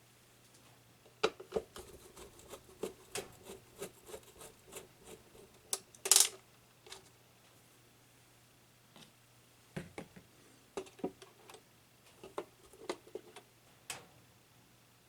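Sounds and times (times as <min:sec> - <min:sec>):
faint steady hum: 0:00.0 - 0:15.0
plastic scrape: 0:01.5 - 0:05.6.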